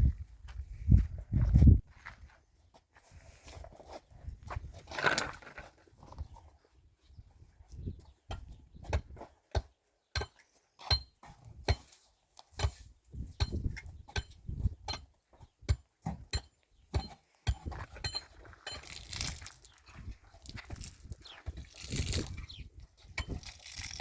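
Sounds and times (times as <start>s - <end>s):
hard objects clinking and knocking: 16.4s - 19.7s, 23.2s - 24.0s
rustling: 18.8s - 21.1s.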